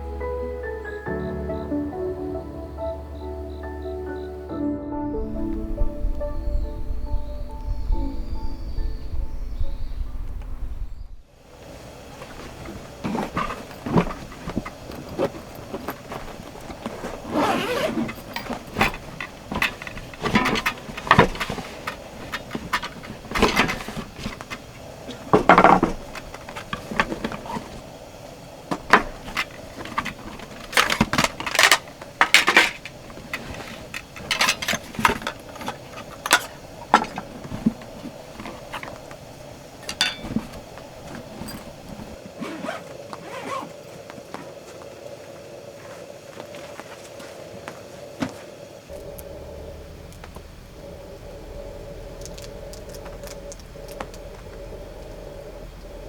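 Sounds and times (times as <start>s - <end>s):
cookware clinking and scraping: 28.7s - 38.9s, 39.8s - 42.2s.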